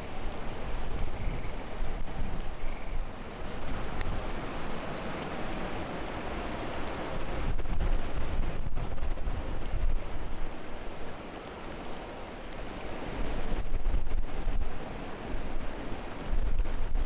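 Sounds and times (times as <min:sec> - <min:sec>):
wind on microphone: 0:00.0 - 0:04.4, 0:07.2 - 0:10.8, 0:12.7 - 0:17.0.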